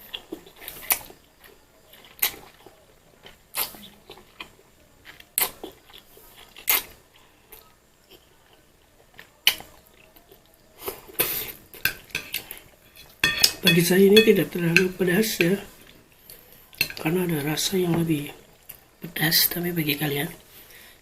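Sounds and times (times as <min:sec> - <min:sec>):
person chewing noodles: 0:00.0 - 0:13.2.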